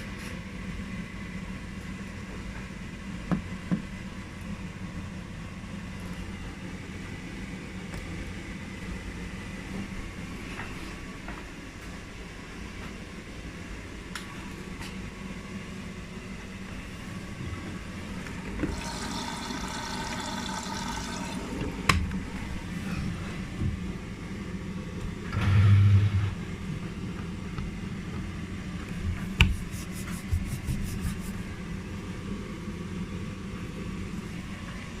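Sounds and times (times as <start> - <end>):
washing machine hum: 0.0 - 35.0
water rushing through drum: 18.6 - 21.9.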